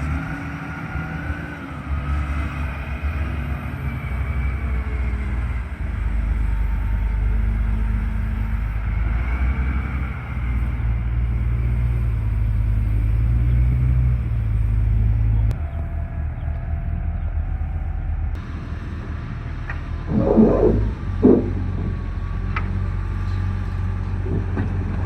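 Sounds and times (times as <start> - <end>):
diesel engine droning: 0.0 - 25.0
faint whine: 19.3 - 22.6.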